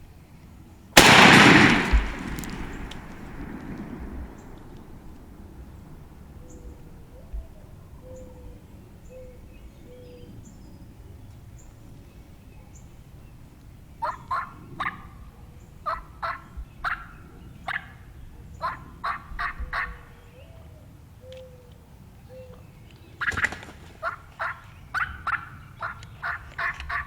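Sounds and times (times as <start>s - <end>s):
wild turkeys calling: 23.2s - 27.0s.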